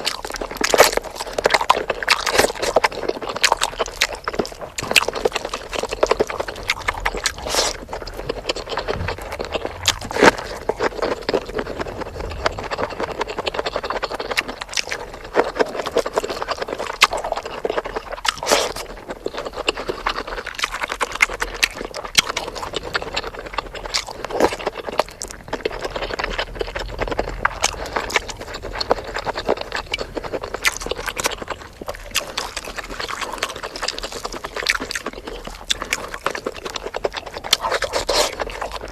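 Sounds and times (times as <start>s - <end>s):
person chewing: 0.0s - 38.9s.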